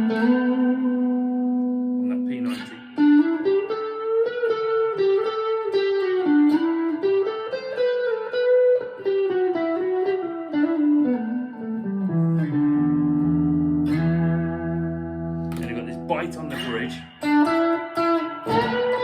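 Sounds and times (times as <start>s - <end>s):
electric guitar melody: 0.0s - 19.0s.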